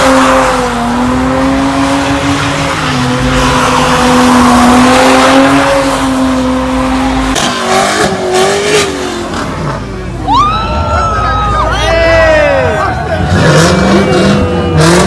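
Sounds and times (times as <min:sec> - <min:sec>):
car engine revving high: 0:00.0 - 0:09.9, 0:13.1 - 0:15.0.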